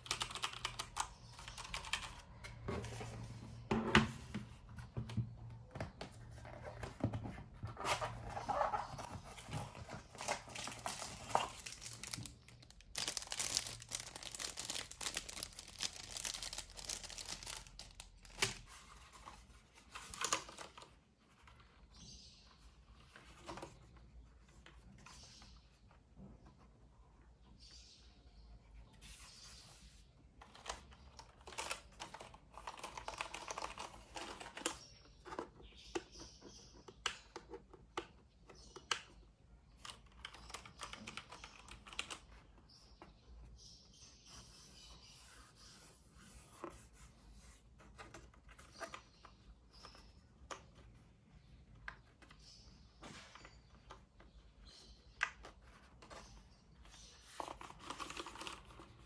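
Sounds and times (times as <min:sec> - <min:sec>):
packaging rustling and crinkling: 0:06.3 - 0:18.8.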